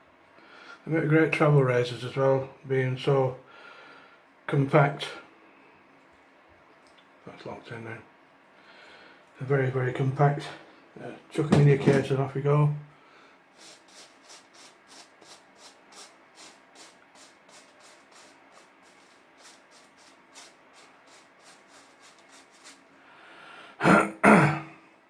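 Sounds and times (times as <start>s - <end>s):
razor scraping stubble: 13.6s - 22.9s.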